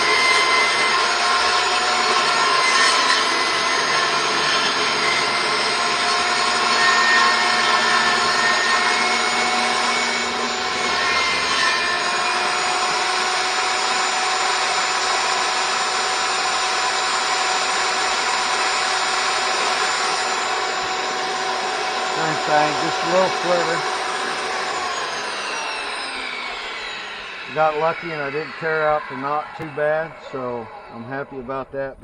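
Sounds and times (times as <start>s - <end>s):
table saw cutting wood: 0.0s - 31.9s.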